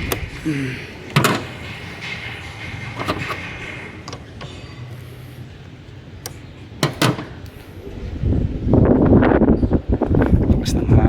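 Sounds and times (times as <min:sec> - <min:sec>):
hand tools clicking and knocking: 0:00.0 - 0:07.5.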